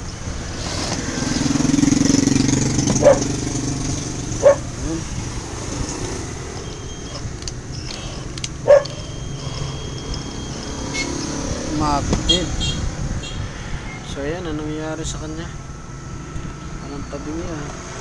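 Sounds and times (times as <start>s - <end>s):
vehicle engine running: 0.0s - 18.0s.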